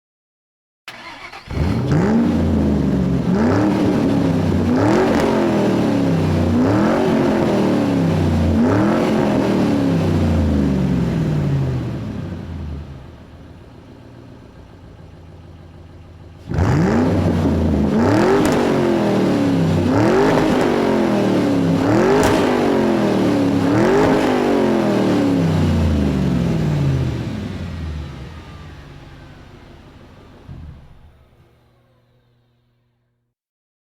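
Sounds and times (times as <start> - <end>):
car engine revving: 0.9 - 32.4
car engine idling: 0.9 - 32.8.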